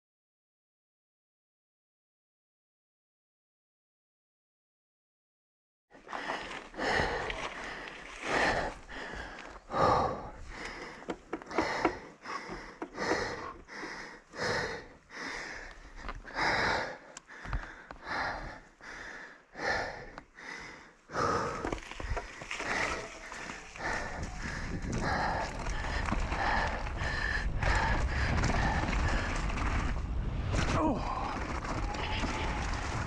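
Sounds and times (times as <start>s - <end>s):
person breathing heavily: 6.0s - 29.7s.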